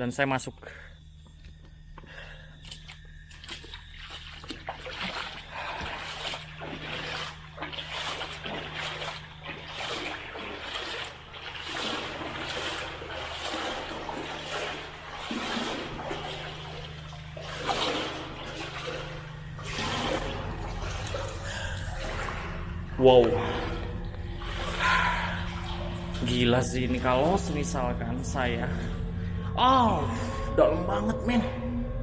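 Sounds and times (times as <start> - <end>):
splashing through water: 2.7 - 27.6.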